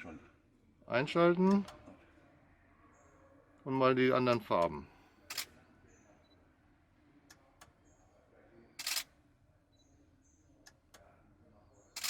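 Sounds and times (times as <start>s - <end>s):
faint high-pitched beeps: 6.0s - 6.5s, 9.6s - 10.7s
camera shutter firing: 8.8s - 9.1s.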